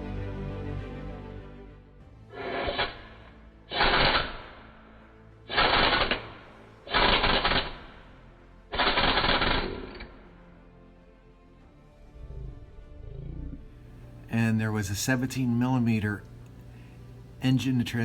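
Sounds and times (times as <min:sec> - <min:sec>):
background music: 0:00.0 - 0:18.0
impact wrench hammering: 0:03.7 - 0:04.7, 0:05.5 - 0:08.0, 0:08.8 - 0:10.1.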